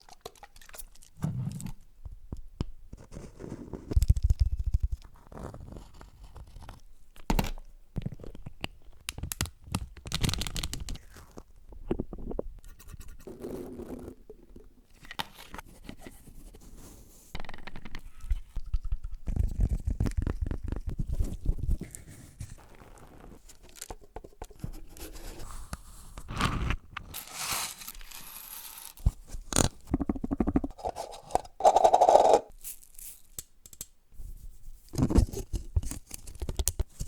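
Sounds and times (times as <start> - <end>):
close scratching and scraping: 30.6 - 32.8.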